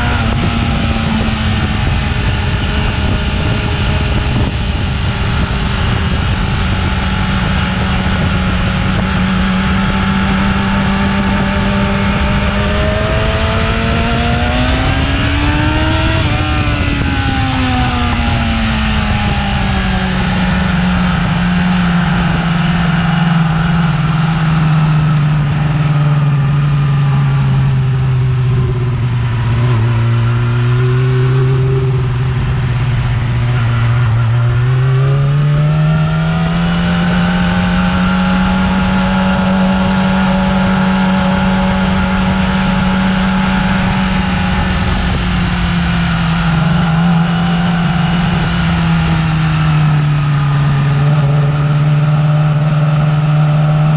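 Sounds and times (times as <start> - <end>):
motorcycle engine running: 0.0 - 53.9.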